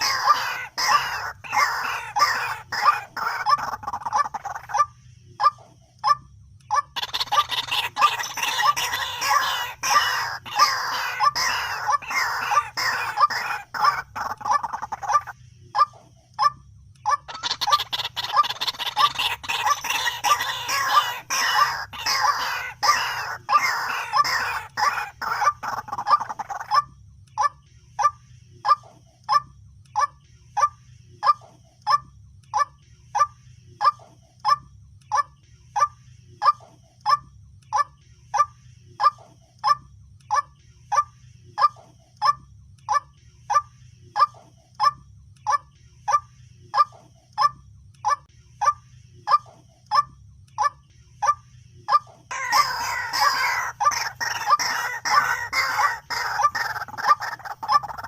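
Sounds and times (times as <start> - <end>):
bird harsh calls: 0.0 - 5.7, 6.7 - 16.0, 17.0 - 29.0, 50.6 - 58.0.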